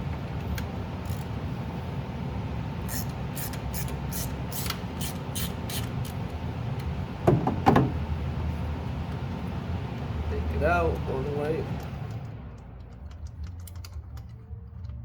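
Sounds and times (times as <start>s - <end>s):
ratchet wrench clicking: 1.0s - 1.3s, 2.9s - 6.2s.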